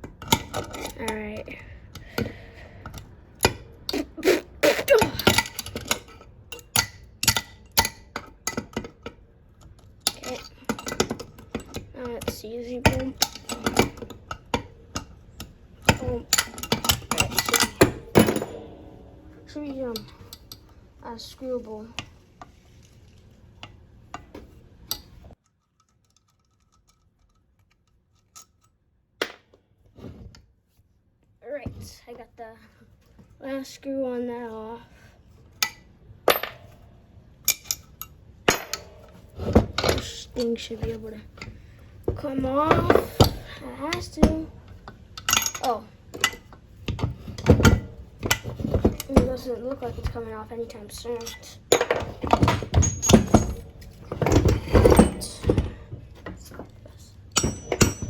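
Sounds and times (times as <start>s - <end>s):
hand tools clinking on metal: 5.0s - 21.6s, 37.5s - 41.6s, 42.2s - 46.6s, 47.2s - 58.0s
metal scraping: 16.0s - 22.2s.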